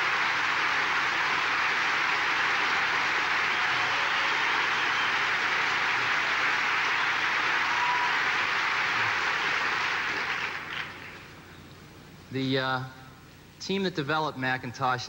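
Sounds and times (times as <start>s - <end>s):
large audience applauding: 0.0s - 11.3s.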